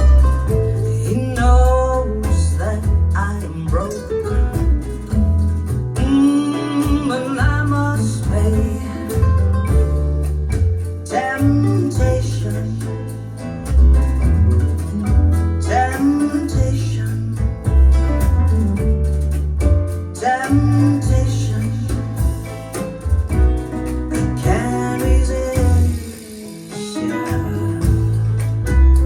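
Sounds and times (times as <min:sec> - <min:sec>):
person singing: 0:00.0 - 0:04.2, 0:06.0 - 0:09.5, 0:11.1 - 0:13.1, 0:15.6 - 0:17.5, 0:20.1 - 0:22.4, 0:24.2 - 0:29.0
deep bass line: 0:00.0 - 0:26.2, 0:27.1 - 0:29.0
plucked guitar: 0:00.0 - 0:29.0.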